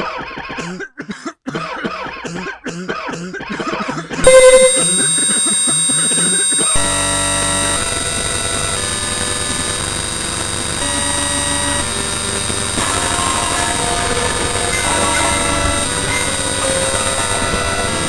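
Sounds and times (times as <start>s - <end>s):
droning synthesizer tones: 4.2s - 18.0s
dense electronic hiss: 4.3s - 18.0s.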